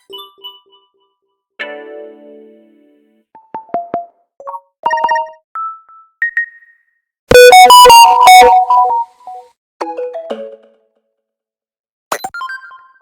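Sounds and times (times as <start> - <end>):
electronic notification chimes: 7.4 - 8.8.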